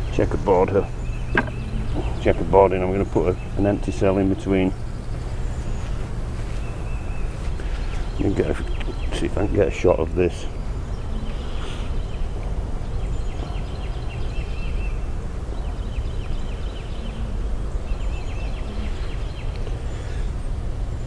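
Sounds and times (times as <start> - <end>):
honeybees buzzing: 0.0 - 15.0
small bird chirping: 0.0 - 17.2.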